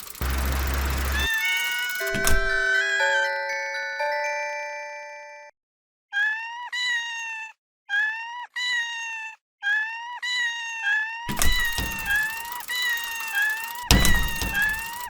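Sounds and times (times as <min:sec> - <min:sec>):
level-crossing warning alarm: 0:00.0 - 0:04.2, 0:11.5 - 0:15.0.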